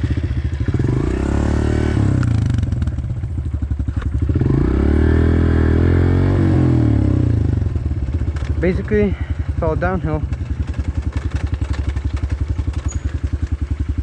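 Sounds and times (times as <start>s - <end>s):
dirt bike engine revving: 0.0s - 14.0s
sharp clicks and clatters: 8.2s - 9.0s, 10.3s - 13.8s.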